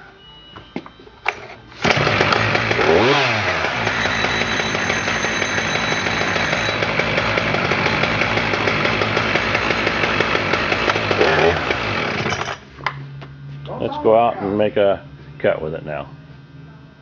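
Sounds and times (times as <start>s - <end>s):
chainsaw engine starting: 1.8s - 12.7s.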